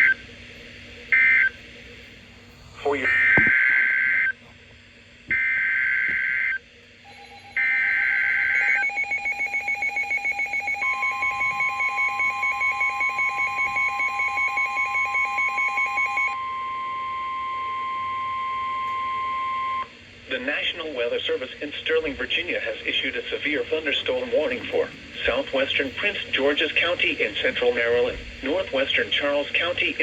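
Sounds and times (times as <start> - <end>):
long steady alert tone: 5.3 - 19.9.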